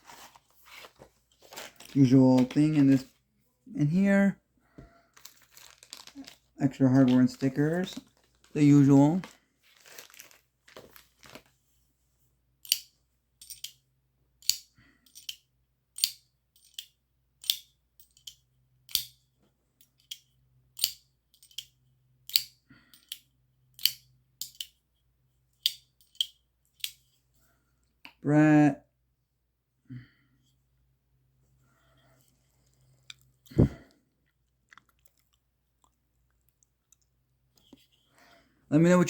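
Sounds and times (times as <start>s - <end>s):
folding knife clicking open and shut: 12.6s - 13.8s, 14.4s - 15.4s, 16.0s - 19.2s, 20.8s - 21.7s, 22.3s - 23.2s, 23.8s - 24.8s, 25.6s - 27.0s.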